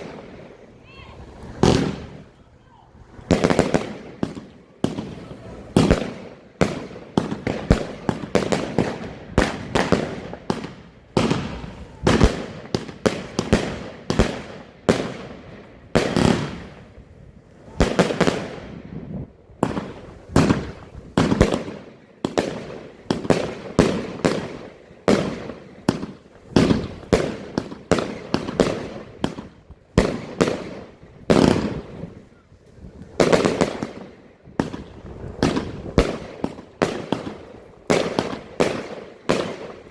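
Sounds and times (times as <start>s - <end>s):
fireworks bangs with echo: 0.0s - 2.4s, 3.0s - 17.1s, 17.7s - 39.9s.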